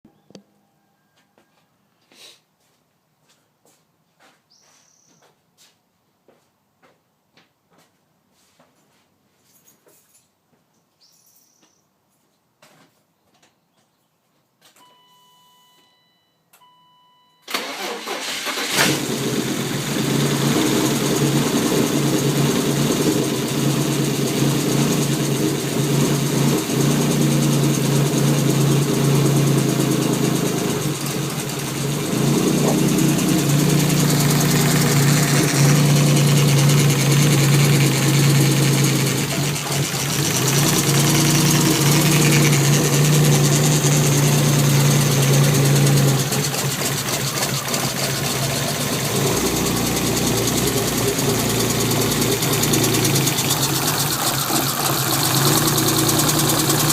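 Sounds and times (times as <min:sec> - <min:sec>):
short beeps: 0:14.8 - 0:17.5
car engine starting and idling roughly: 0:17.5 - 0:56.9.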